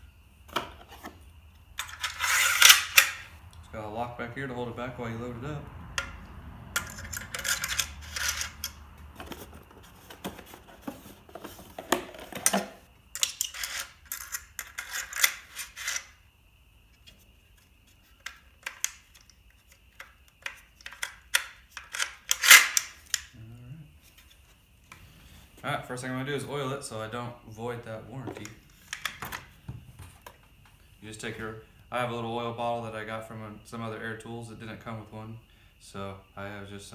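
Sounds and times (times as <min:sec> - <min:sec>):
nails clicking into nailer magazine: 0:20.0 - 0:23.3.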